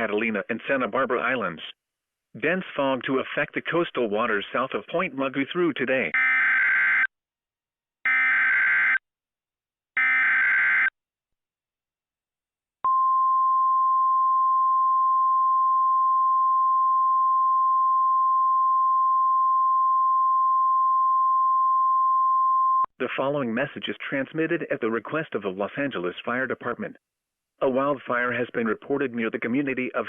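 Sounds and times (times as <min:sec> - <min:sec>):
steady alarm tone: 0:06.2 - 0:07.1, 0:08.1 - 0:09.0, 0:10.0 - 0:10.9.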